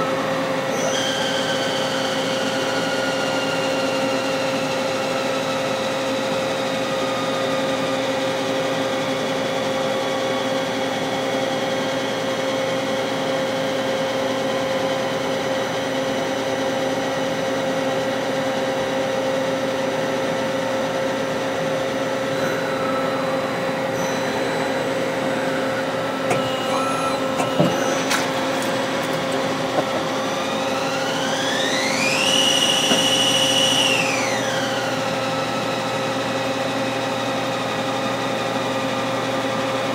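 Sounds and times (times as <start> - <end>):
lathe machine hum: 0.0 - 39.9
spindle whine: 21.5 - 35.9.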